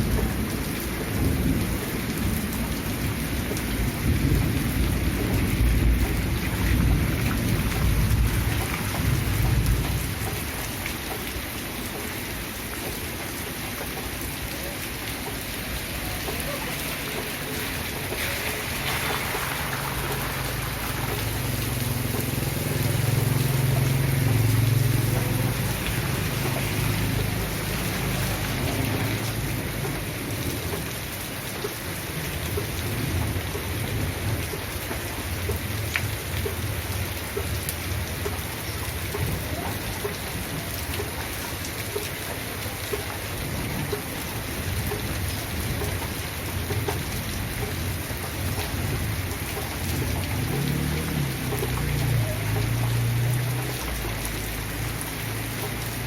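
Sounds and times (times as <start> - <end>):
steady rain falling: 0.0 - 56.0
low rumble of thunder: 0.1 - 10.3.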